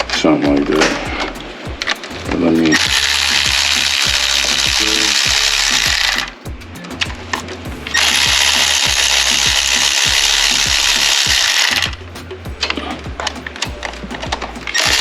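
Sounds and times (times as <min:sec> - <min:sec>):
background music with steady beat: 0:00.0 - 0:15.0.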